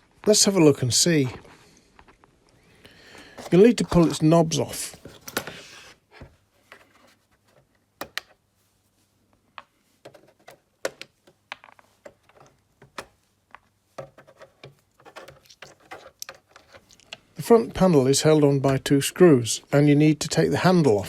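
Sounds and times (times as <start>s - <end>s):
plastic knobs clicking and scraping: 3.3s - 4.3s, 10.0s - 19.1s.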